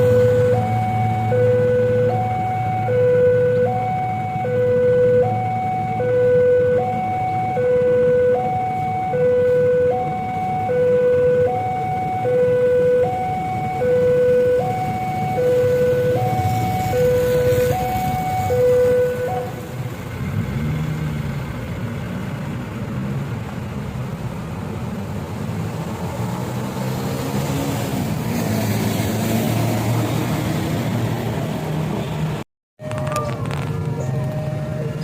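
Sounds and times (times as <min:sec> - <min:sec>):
two-tone crossing alarm: 0:00.0 - 0:19.6, 0:32.8 - 0:35.0.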